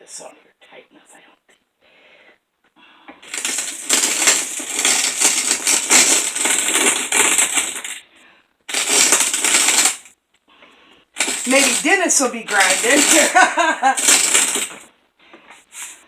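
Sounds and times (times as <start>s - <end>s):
hand grain mill crunching kernels: 3.2s - 8.0s, 8.7s - 10.1s, 11.2s - 14.9s.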